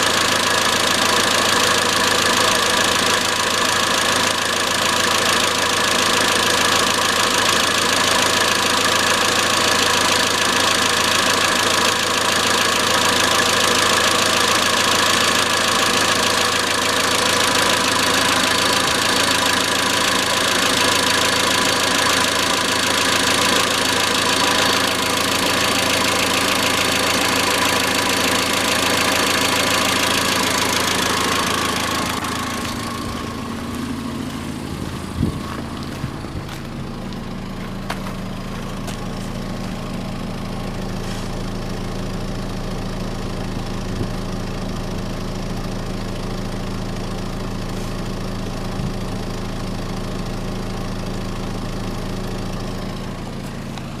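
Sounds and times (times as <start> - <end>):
car engine idling with metallic knock: 0.0 - 54.0.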